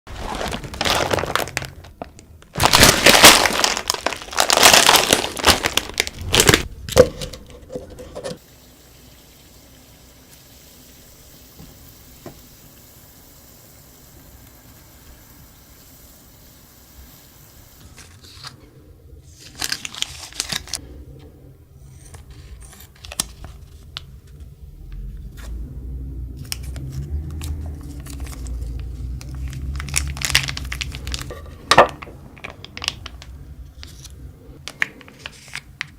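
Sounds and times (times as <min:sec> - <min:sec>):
plastic packaging crinkling and tearing: 0:00.1 - 0:07.0, 0:17.8 - 0:20.8, 0:22.2 - 0:24.5, 0:26.4 - 0:35.9
low rumble: 0:24.2 - 0:31.3.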